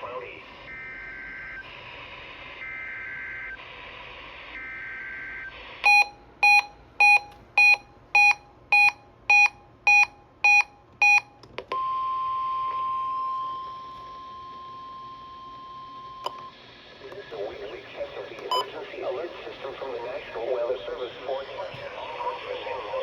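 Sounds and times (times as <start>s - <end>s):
steady warning alarm tone: 0.2s - 11.2s, 17.3s - 21.7s
loud beeps: 5.2s - 12.0s.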